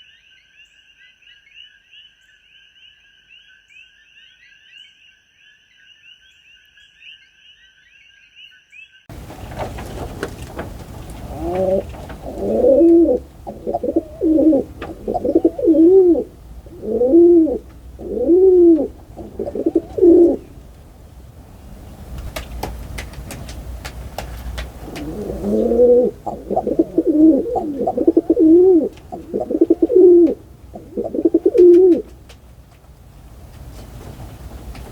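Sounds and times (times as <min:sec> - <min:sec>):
small birds twittering: 0:06.2 - 0:34.9
dove cooing: 0:09.2 - 0:32.5.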